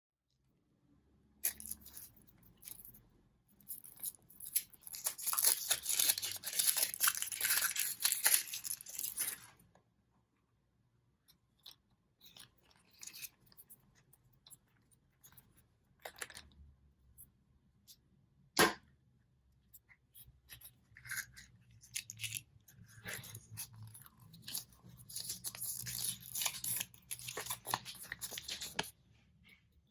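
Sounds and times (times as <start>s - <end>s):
wrapper tearing and crinkling: 4.0s - 9.5s, 24.5s - 28.8s.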